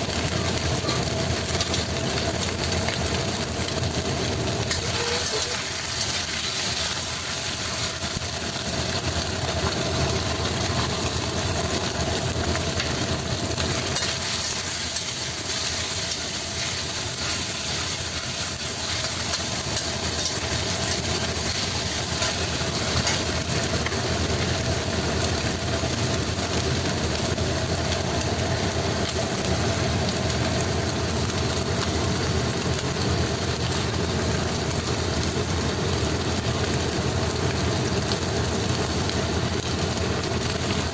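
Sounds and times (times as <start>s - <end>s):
extractor fan humming: 0.0s - 27.6s
stir-frying sizzle in a pan: 0.0s - 40.9s.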